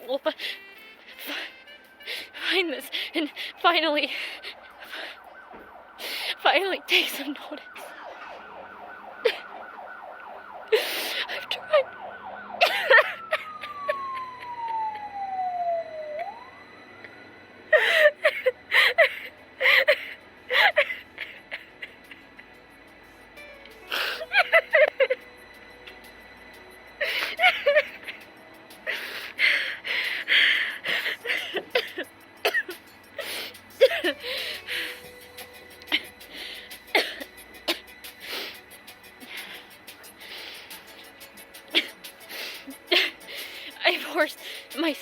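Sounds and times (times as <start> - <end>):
woman sobbing: 0.0 - 5.3, 6.0 - 8.0, 9.2 - 9.7, 10.7 - 12.0, 12.6 - 14.9, 17.7 - 22.5, 23.9 - 25.2, 27.0 - 28.2, 28.8 - 35.2, 35.8 - 38.6, 41.7 - 45.0
siren-like wail: 1.3 - 44.1
woman whimpering: 9.2 - 9.5, 10.7 - 12.0, 17.7 - 22.2, 23.9 - 25.2.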